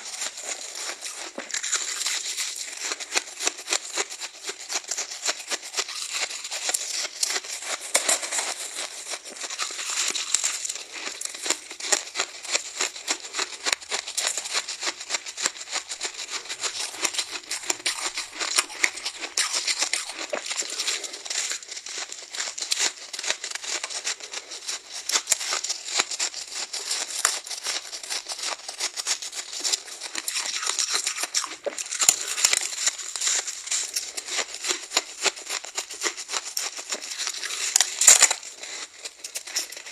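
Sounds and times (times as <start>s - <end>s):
ice being crunched: 29.9s - 39.9s.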